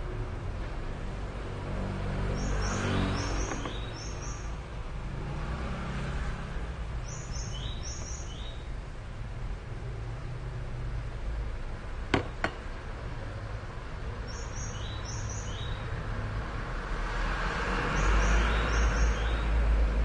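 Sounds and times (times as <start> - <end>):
bird chirps: 2.3 - 4.6, 7.0 - 8.7, 14.2 - 15.9, 18.0 - 19.6.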